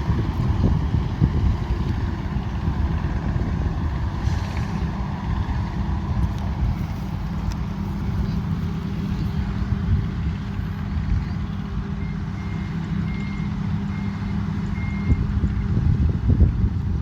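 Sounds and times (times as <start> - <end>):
diesel engine rumbling: 0.0 - 17.0.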